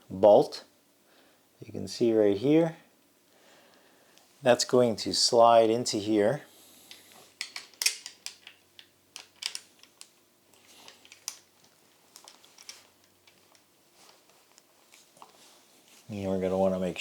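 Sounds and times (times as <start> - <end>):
metal parts clicking and tapping: 6.9 - 13.6.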